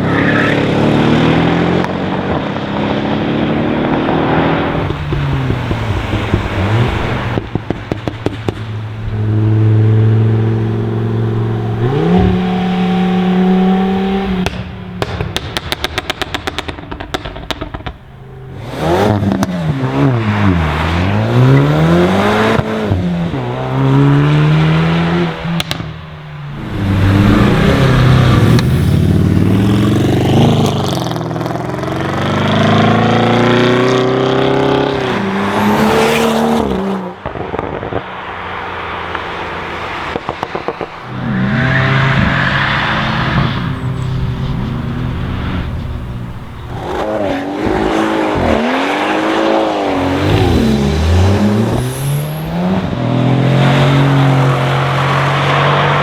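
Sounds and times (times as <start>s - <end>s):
car engine revving: 0.0s - 56.0s
exhaust pops and crackles: 3.8s - 21.6s, 25.4s - 33.1s, 36.6s - 47.8s.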